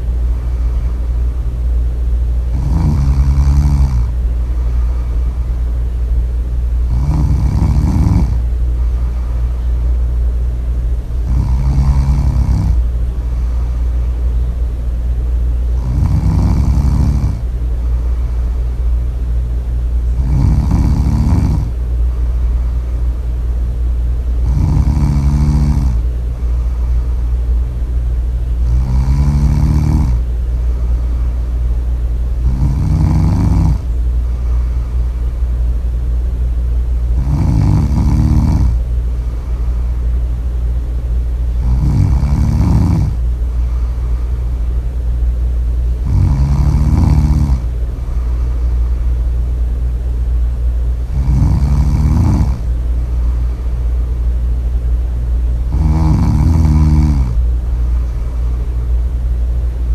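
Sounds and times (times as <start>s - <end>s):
steady low rumble: 0.0s - 59.9s
loud snoring: 2.5s - 4.2s, 6.8s - 9.3s, 11.2s - 13.8s, 15.8s - 17.5s, 20.1s - 21.8s, 24.4s - 26.1s, 28.6s - 30.3s, 32.4s - 34.8s, 37.1s - 38.8s, 41.5s - 44.2s, 46.0s - 48.6s, 51.0s - 52.7s, 55.6s - 58.4s.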